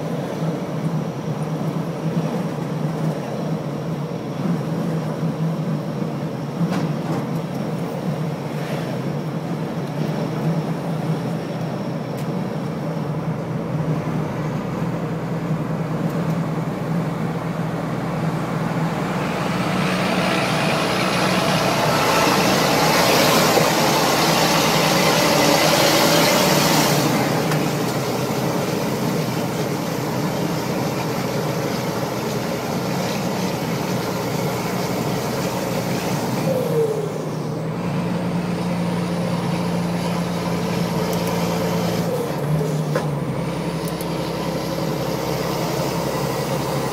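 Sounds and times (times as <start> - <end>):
diesel truck engine running: 0.0 - 46.9
turbocharger whining: 14.7 - 46.9.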